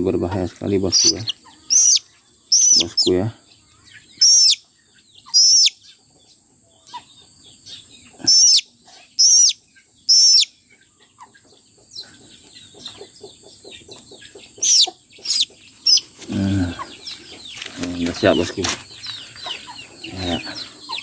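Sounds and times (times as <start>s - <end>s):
chick peeping shrilly: 0.2s - 21.0s.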